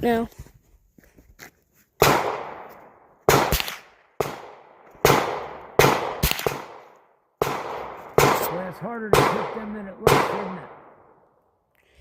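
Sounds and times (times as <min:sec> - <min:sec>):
sharp cracks: 0:02.0 - 0:11.1
gunshots echoing: 0:02.0 - 0:11.2.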